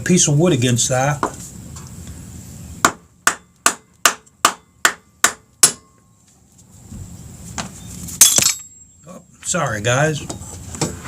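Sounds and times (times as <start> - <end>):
hammer striking wood block: 2.8 - 6.0.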